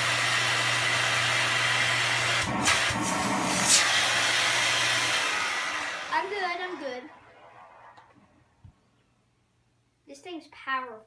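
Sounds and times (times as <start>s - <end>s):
vacuum cleaner running: 0.0s - 8.1s
vacuum motor winding down: 0.0s - 8.1s.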